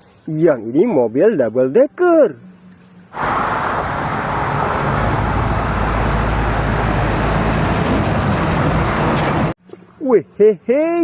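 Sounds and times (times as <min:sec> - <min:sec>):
road traffic noise: 0:03.1 - 0:09.7.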